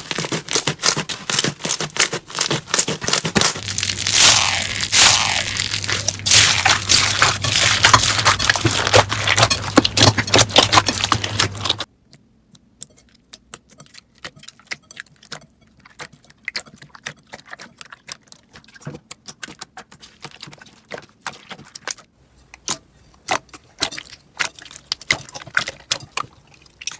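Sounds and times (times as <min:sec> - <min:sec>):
slime squeezed by hand crackling: 0:00.0 - 0:11.9.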